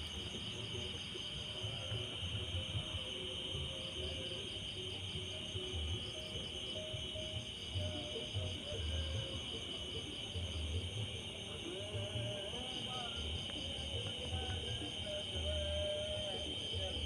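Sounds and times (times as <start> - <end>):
insects chirping: 0.0 - 17.0.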